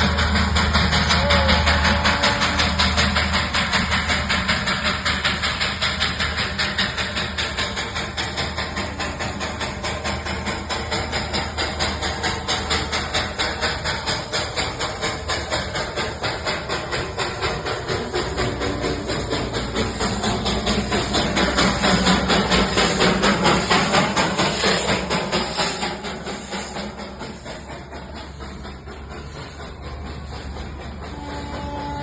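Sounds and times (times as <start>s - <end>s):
steam train chuffing and hissing: 0.0s - 32.0s.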